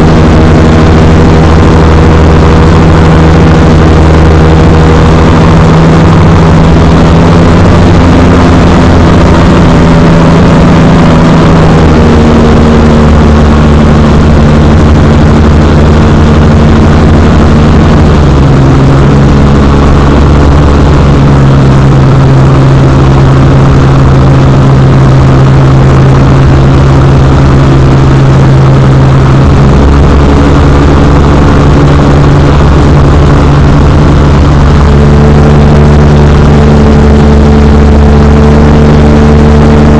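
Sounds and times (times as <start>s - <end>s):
microlight engine and propeller droning: 0.0s - 39.9s.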